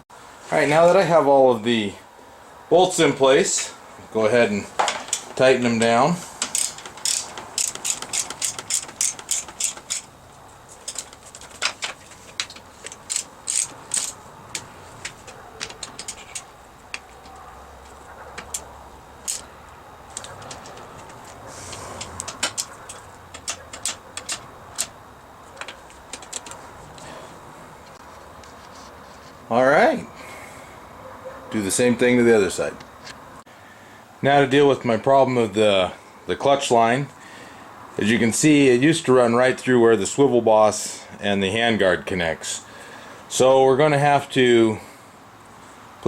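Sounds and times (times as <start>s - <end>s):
hand ratchet clicking: 5.0s - 17.4s, 18.4s - 19.5s, 20.1s - 26.6s.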